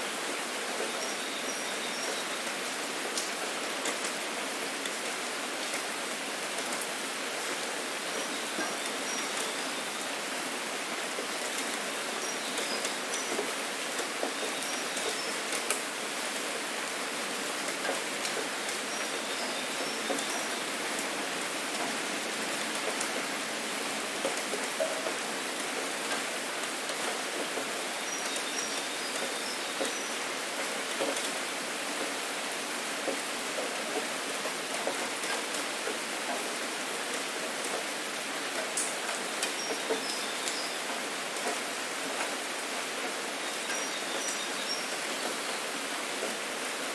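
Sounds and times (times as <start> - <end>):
steady rain hissing: 0.0 - 46.9
raindrop ticks: 43.6 - 45.4.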